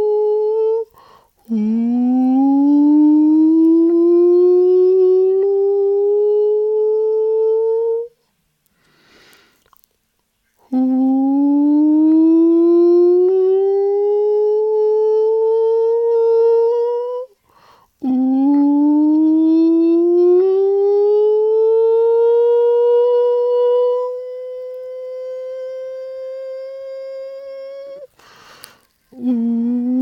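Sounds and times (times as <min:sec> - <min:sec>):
person humming rising tones: 0:00.0 - 0:08.2, 0:10.7 - 0:17.4, 0:18.0 - 0:28.1, 0:29.1 - 0:30.0
breath: 0:00.9 - 0:01.4, 0:08.7 - 0:09.6, 0:17.4 - 0:18.0, 0:28.1 - 0:29.0.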